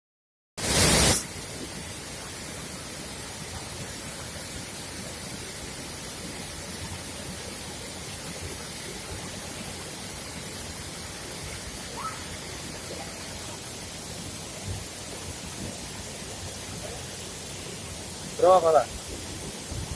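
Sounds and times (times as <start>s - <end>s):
waterfall rushing: 0.6s - 19.9s.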